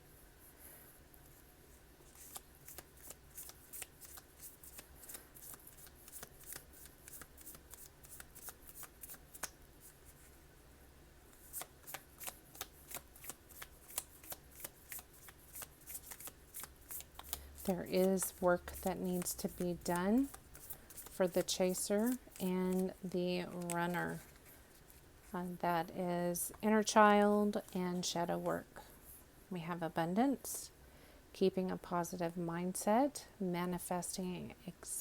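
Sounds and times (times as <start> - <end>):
cards being shuffled: 2.0 - 10.3, 11.3 - 25.1.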